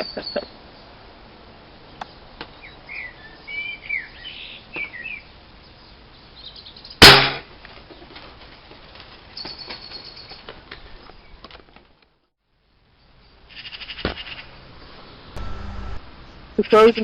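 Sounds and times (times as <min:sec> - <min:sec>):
small birds chirping: 0:01.9 - 0:07.0
air rifle shot: 0:07.0 - 0:07.4.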